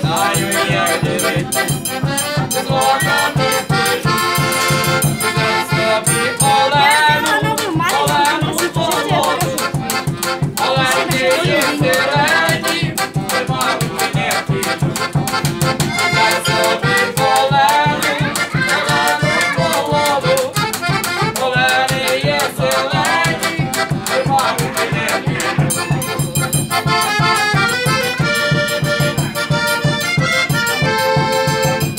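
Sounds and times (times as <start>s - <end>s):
accordion folk music: 0.0s - 31.9s
steady beat: 0.0s - 31.9s.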